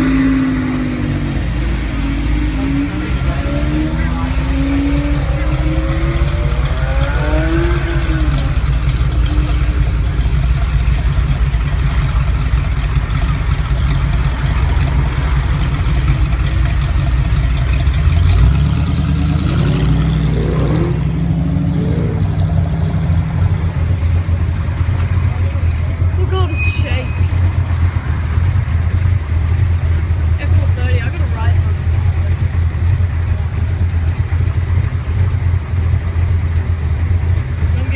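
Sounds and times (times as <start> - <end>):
car engine running: 0.0 - 37.9.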